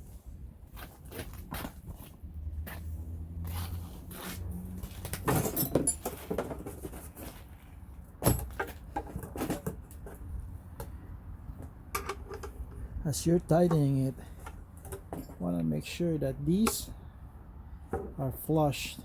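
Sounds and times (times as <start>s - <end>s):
metal parts clicking and rustling: 5.1s - 7.3s.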